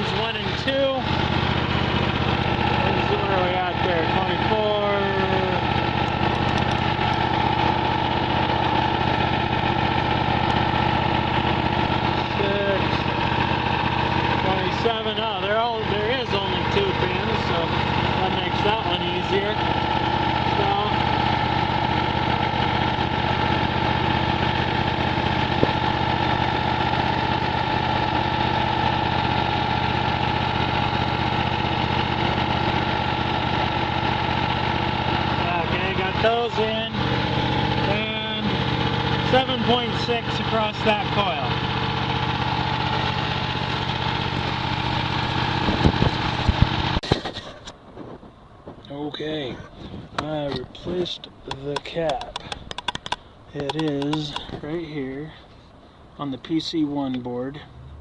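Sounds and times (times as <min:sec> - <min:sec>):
welder engine running: 0:00.0 - 0:49.1, 0:49.8 - 0:57.1
sharp click: 0:51.5 - 0:54.5.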